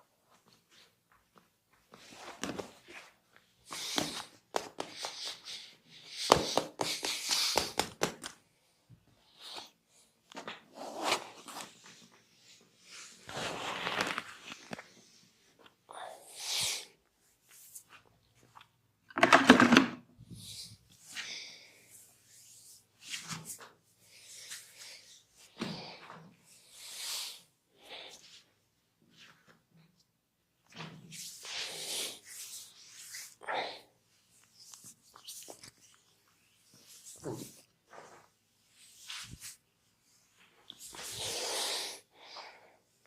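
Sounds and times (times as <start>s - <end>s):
hands rubbing skin: 3.7s - 5.6s, 6.2s - 8.4s, 32.1s - 33.4s, 34.4s - 39.7s.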